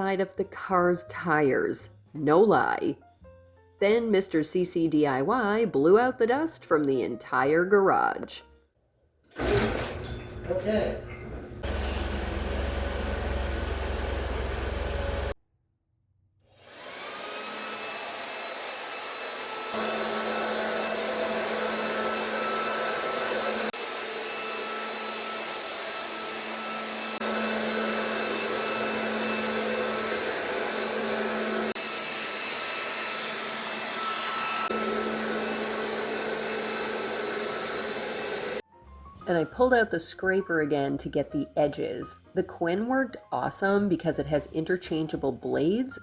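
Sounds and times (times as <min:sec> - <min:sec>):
vacuum cleaner motor whining: 0:09.4 - 0:15.4, 0:16.5 - 0:38.6.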